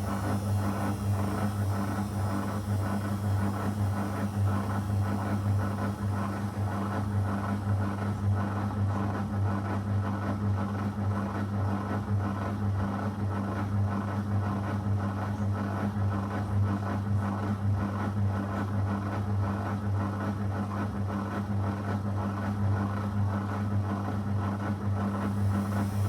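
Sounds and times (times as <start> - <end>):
washing machine humming: 0.0 - 10.1, 24.8 - 26.0.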